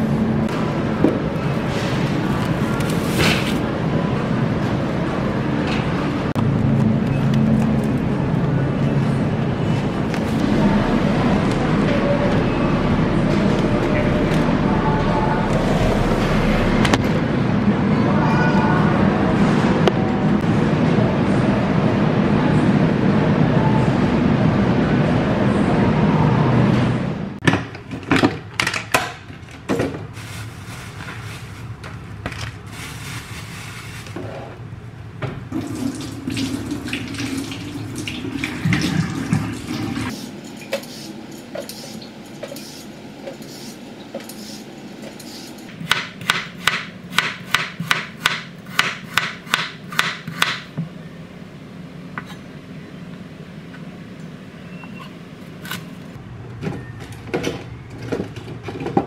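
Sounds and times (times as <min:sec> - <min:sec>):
water running in sink: 0:35.6 - 0:40.1.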